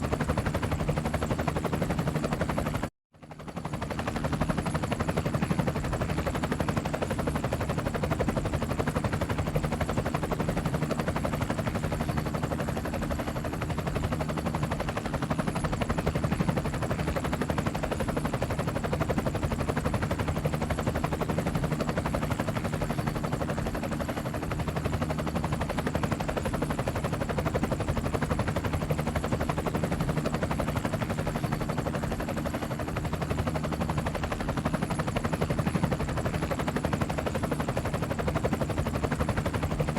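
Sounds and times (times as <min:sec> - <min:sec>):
helicopter rotor chopping: 0:00.0 - 0:39.9.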